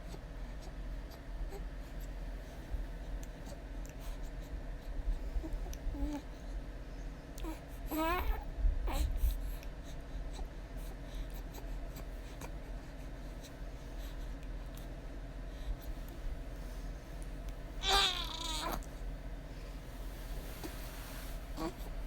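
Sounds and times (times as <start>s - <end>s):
low room noise: 0.0s - 22.0s.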